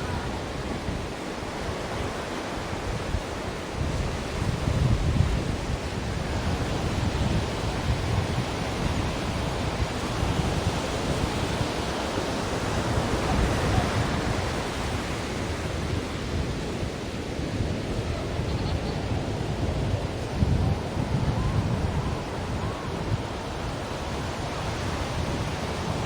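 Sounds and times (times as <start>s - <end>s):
waves breaking: 0.0s - 26.0s.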